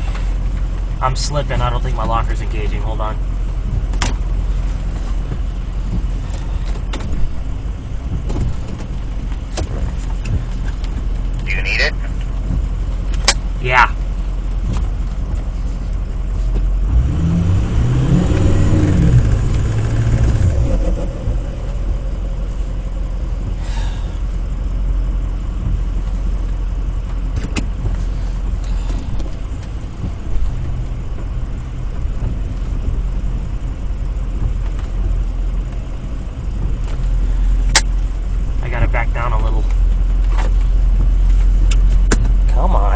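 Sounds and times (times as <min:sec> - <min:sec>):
man talking: 0:01.0 - 0:03.2, 0:11.4 - 0:12.2, 0:13.6 - 0:14.0, 0:38.6 - 0:39.7, 0:42.5 - 0:42.9
truck engine revving: 0:14.4 - 0:39.4.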